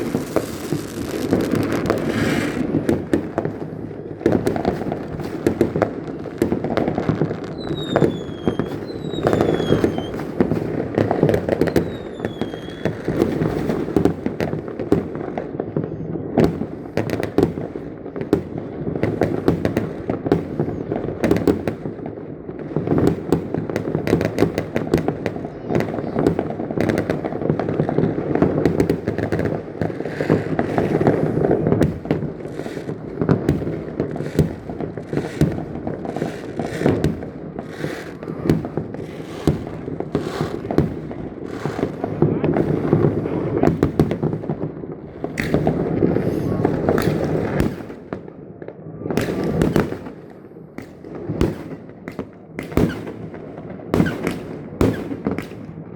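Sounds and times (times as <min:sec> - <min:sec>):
falling firework whistles: 0:00.0 - 0:03.1, 0:07.4 - 0:10.4, 0:11.4 - 0:13.3, 0:54.0 - 0:55.5
fireworks crackling and banging: 0:00.0 - 0:55.9.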